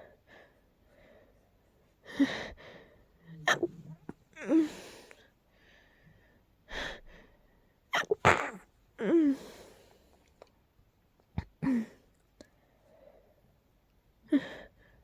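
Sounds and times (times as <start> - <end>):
stifled sneezes: 3.3 - 4.8, 7.9 - 8.7.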